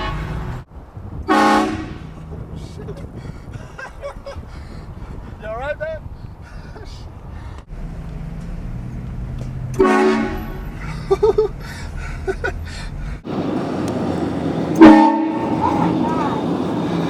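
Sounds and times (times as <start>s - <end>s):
air horn blasting: 0.0s - 0.4s, 1.3s - 2.1s, 9.8s - 10.7s, 14.7s - 16.6s.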